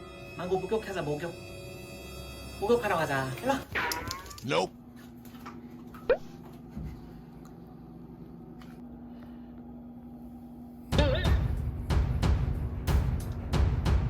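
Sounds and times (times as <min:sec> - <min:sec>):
music with heavy drum beats: 0:10.9 - 0:14.0.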